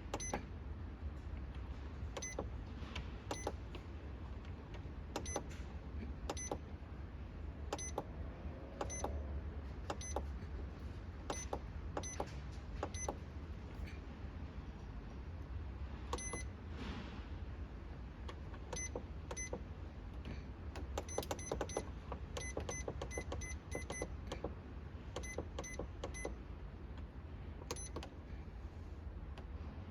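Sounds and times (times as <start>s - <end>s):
fridge panel beeps: 0.0s - 0.5s, 2.2s - 2.5s, 3.3s - 3.6s, 5.2s - 5.5s, 6.3s - 6.6s, 7.7s - 8.1s, 8.8s - 9.2s, 9.9s - 10.3s, 11.3s - 13.2s, 16.1s - 16.5s, 18.7s - 19.6s, 20.8s - 24.4s, 25.2s - 26.4s, 27.6s - 28.1s
low fridge hum: 0.0s - 29.9s.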